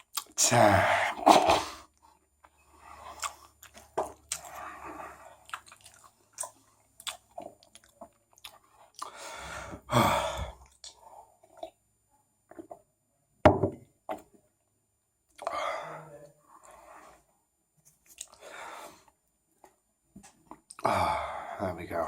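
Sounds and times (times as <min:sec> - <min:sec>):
person chewing with mouth smacks: 0:00.0 - 0:00.4, 0:02.2 - 0:04.7, 0:05.4 - 0:09.2, 0:17.8 - 0:18.4, 0:20.5 - 0:20.8.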